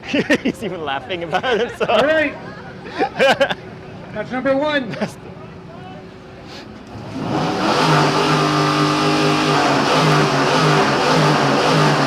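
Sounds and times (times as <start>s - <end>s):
car engine revving: 6.8s - 12.0s.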